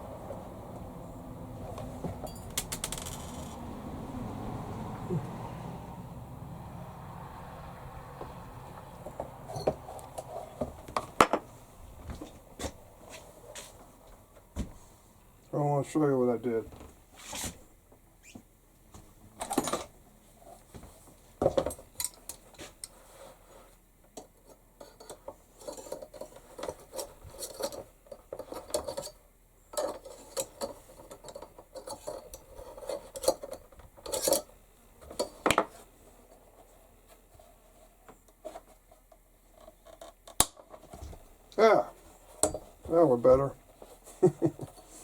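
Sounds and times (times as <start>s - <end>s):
metal tools clinking on workbench: 9.5s - 10.4s.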